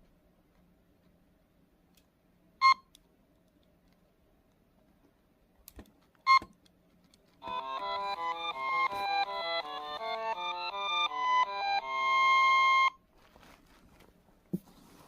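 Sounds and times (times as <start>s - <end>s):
electronic melody: 7.4s - 13.0s.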